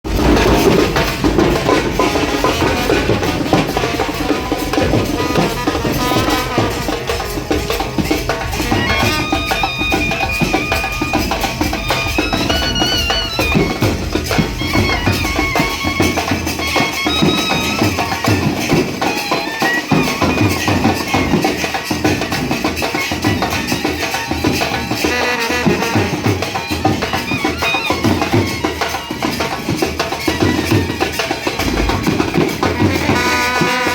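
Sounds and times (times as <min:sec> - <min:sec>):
dense steady drumming: 0:00.0 - 0:15.8
wedding band playing: 0:00.0 - 0:33.9
high reedy melody: 0:00.1 - 0:33.9.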